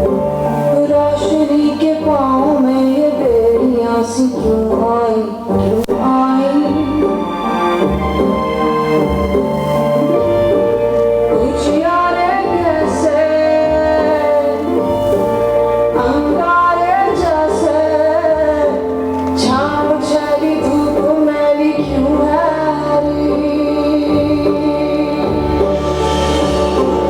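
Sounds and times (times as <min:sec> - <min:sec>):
song with woman singing: 0:00.0 - 0:27.0.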